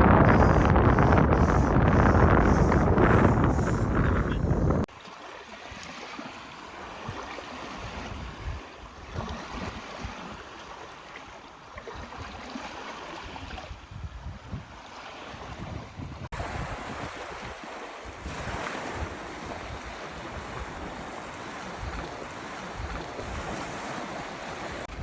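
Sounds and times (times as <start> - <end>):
wind rushing over microphone: 0.0 - 4.9, 13.4 - 25.0
lake water lapping: 0.0 - 25.0.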